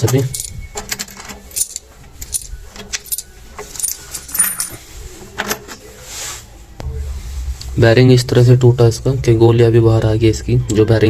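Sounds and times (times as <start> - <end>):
small screws clinking and rattling: 0.0 - 4.8.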